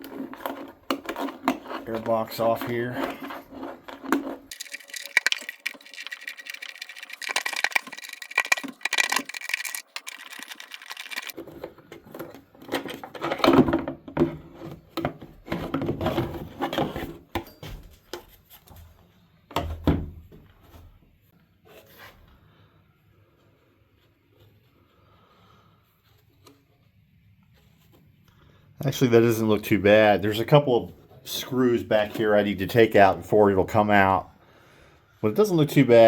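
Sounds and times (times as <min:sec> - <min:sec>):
tools clicking rattling scraping: 0:02.7 - 0:11.4.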